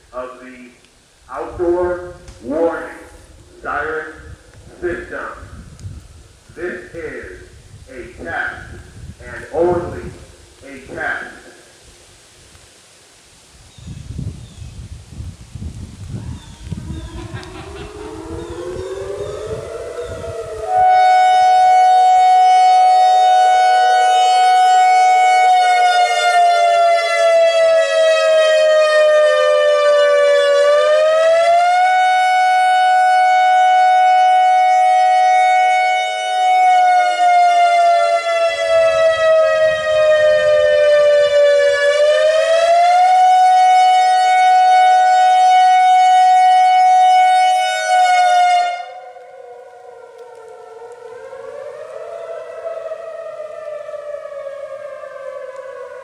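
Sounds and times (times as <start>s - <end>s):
warning siren wailing: 1.3s - 6.0s, 16.0s - 56.0s.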